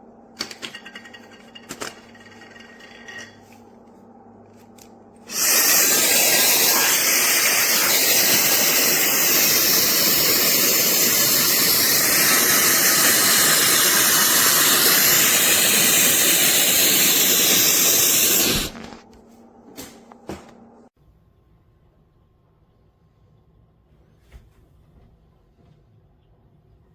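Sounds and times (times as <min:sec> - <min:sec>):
hair dryer blowing: 0:05.3 - 0:19.0.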